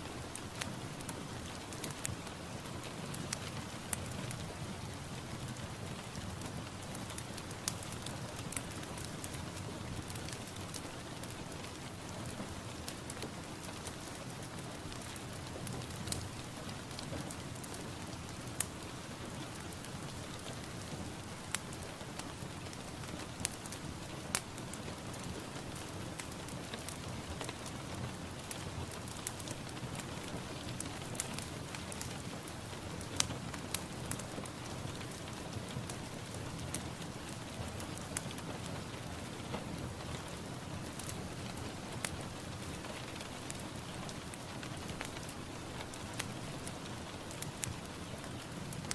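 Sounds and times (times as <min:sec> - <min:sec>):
steady rain hiss: 0:00.0 - 0:48.9
raindrop ticks: 0:32.9 - 0:48.9.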